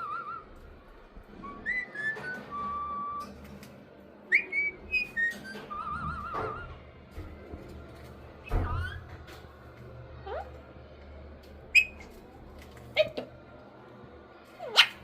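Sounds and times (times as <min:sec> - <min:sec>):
parrot whistling: 0:00.0 - 0:00.6, 0:01.4 - 0:03.3, 0:04.3 - 0:06.8, 0:11.7 - 0:12.1
parrot sharp rising chirp: 0:11.7 - 0:12.1.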